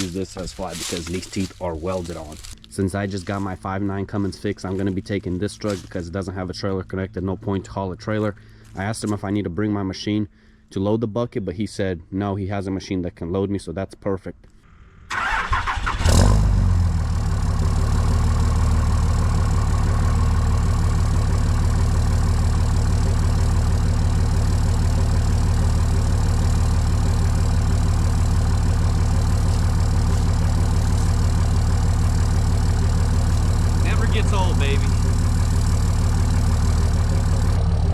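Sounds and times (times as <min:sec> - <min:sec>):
diesel engine starting and idling: 0:15.0 - 0:37.9.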